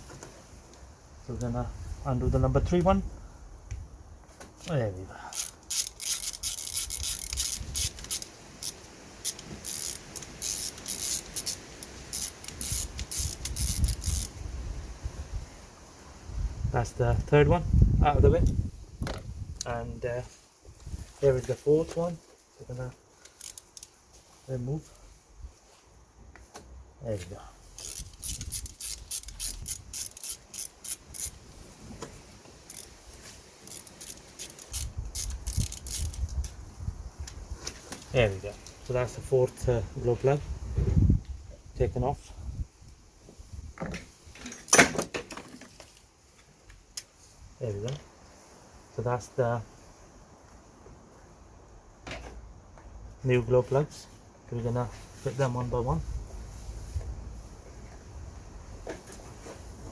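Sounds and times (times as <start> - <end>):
socket ratchet clicking: 5.3 - 14.4, 23.2 - 23.9, 27.8 - 31.4, 32.7 - 33.0, 33.6 - 36.5.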